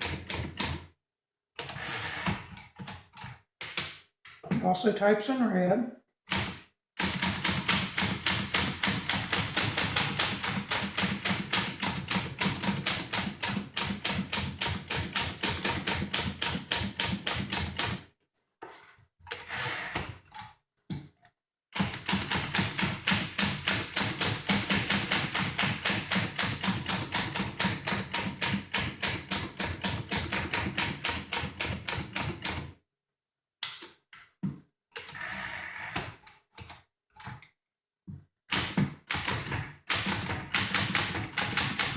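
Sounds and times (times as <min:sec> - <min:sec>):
manual typewriter typing: 0:06.3 - 0:18.0, 0:21.8 - 0:32.7, 0:38.5 - 0:41.9.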